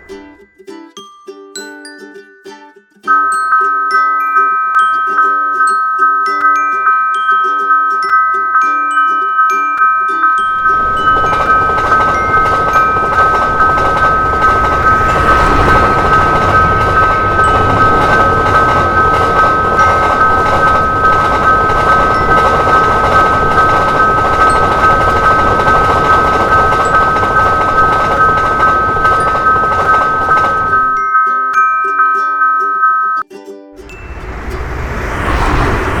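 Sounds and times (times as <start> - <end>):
level crossing bell ringing: 3.1 - 34.8
passing train running noise: 10.4 - 31.0, 33.8 - 36.0.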